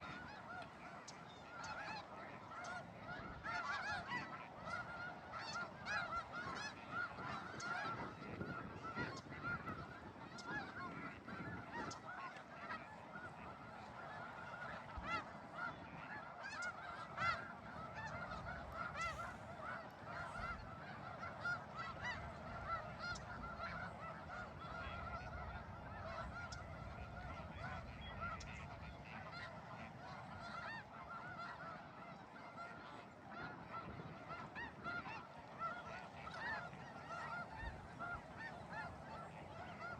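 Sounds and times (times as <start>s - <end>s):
waterfowl flock calling: 0.0s - 39.9s.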